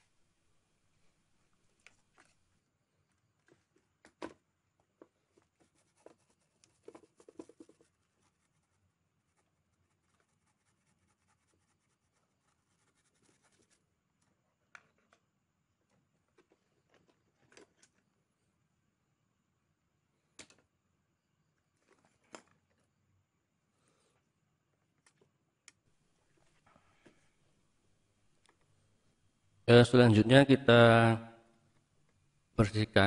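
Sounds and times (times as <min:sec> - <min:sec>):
small brush scrubbing circuit board: 0:05.3 - 0:13.9.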